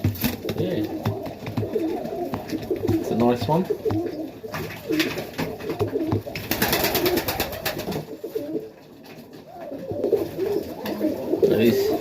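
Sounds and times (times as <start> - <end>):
rapid sharp taps: 0.0 - 7.9
pigeons cooing: 0.0 - 12.0.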